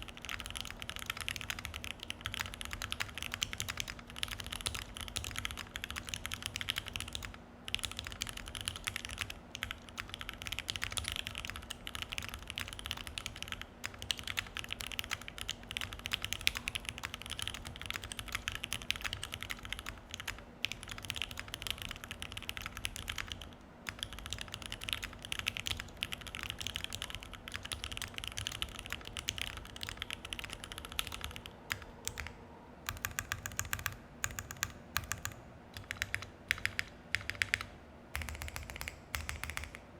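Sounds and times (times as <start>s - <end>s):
fast typing on mechanical keyboard: 0.0s - 39.8s.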